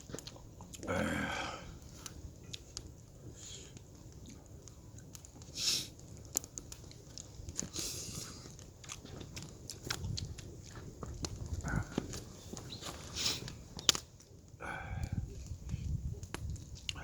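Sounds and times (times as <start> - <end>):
chewing: 0.0 - 1.0, 1.9 - 13.6.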